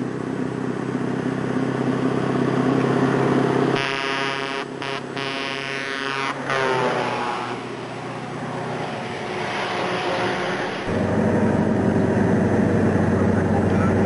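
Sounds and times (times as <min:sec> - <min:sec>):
diesel truck engine revving: 0:00.0 - 0:14.0.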